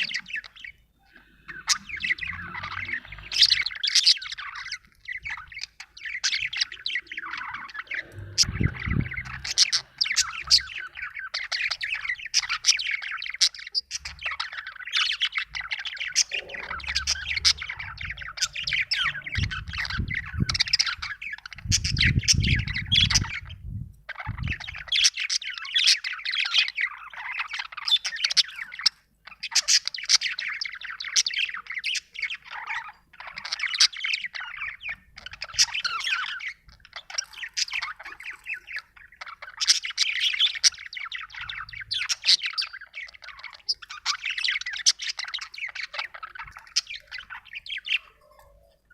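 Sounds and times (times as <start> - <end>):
budgie chirping and chattering: 0.0 - 48.9
low rumbling noises: 7.3 - 11.1, 15.6 - 24.4.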